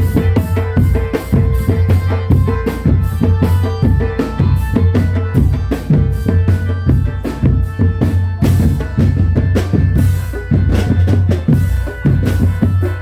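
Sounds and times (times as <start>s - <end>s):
held melodic tone: 0.0s - 13.0s
street drum band music: 0.0s - 13.0s.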